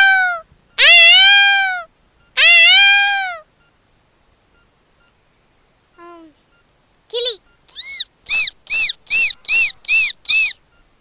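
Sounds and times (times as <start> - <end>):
cat meowing: 0.0 - 3.4.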